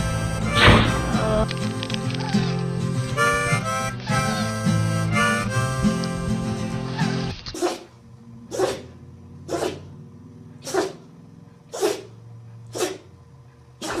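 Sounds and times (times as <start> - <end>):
dog sneezing: 7.0 - 7.9, 8.5 - 8.9, 9.5 - 9.9, 10.6 - 11.0, 11.7 - 12.1, 12.7 - 13.1, 13.8 - 14.0.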